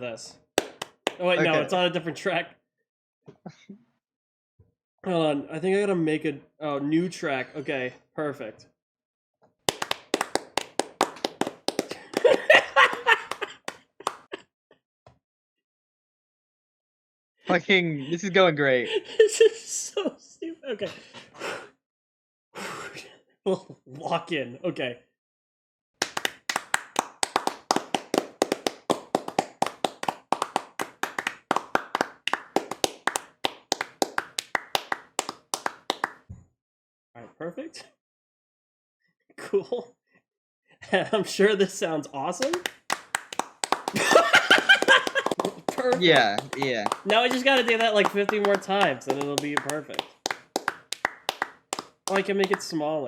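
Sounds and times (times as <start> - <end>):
person clapping hands: 0.6 - 1.6, 9.7 - 14.4, 26.0 - 36.3, 42.4 - 52.7.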